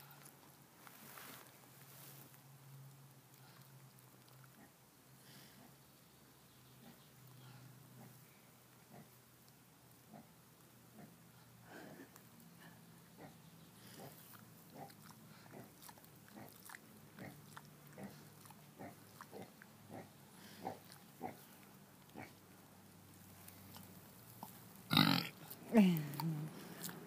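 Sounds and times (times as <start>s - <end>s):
pig mouth smacking and sucking: 14.1s - 19.7s.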